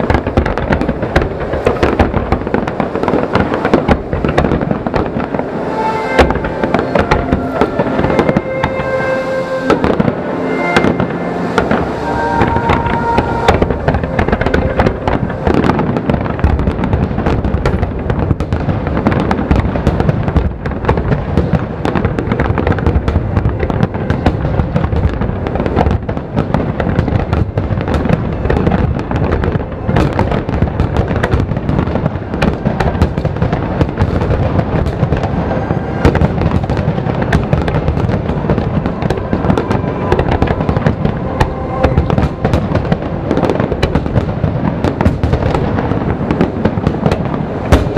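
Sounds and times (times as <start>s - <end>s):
fireworks bursting and crackling: 0.0s - 47.9s.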